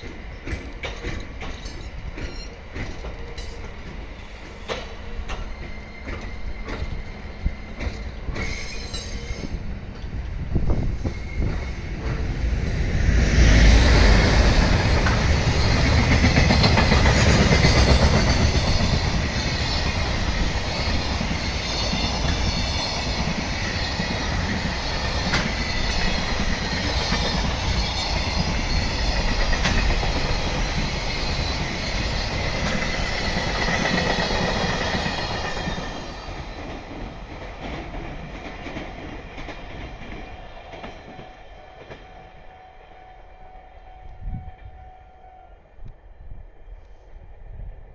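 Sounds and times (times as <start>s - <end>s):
wheels clicking over rail joints: 0.0s - 12.9s, 14.0s - 42.1s
train passing on rails: 0.0s - 47.9s
wheel squeal: 5.3s - 9.6s, 10.6s - 12.2s.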